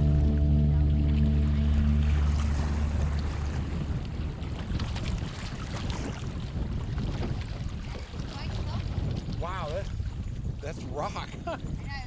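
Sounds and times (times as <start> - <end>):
music track: 0.0 - 3.7
water around a canoe: 0.0 - 12.0
wind buffeting the microphone: 2.1 - 12.0.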